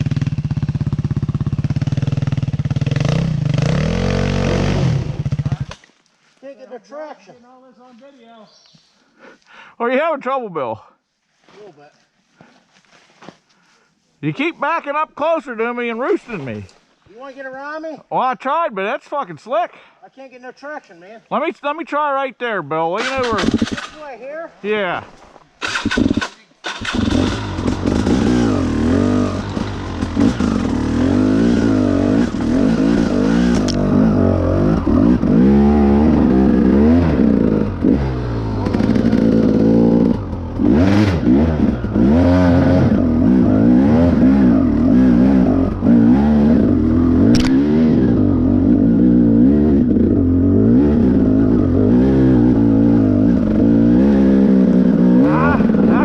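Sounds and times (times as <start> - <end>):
dirt bike engine revving: 0.0 - 5.8, 23.0 - 24.0, 25.6 - 56.0.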